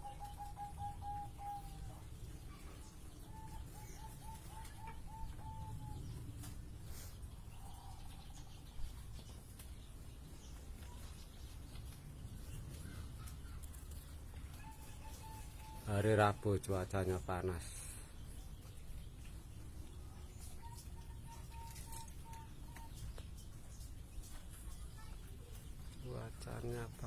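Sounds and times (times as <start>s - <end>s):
dove cooing: 0.0s - 2.6s, 3.2s - 6.2s.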